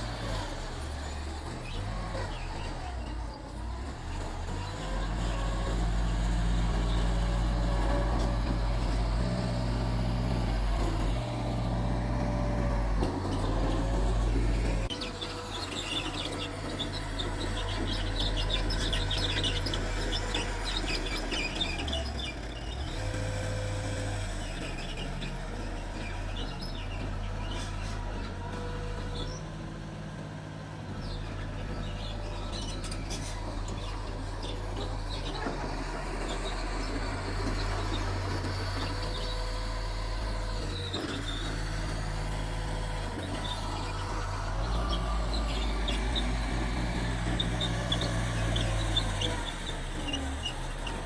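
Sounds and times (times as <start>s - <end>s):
bulldozer diesel engine running: 0.0s - 51.0s.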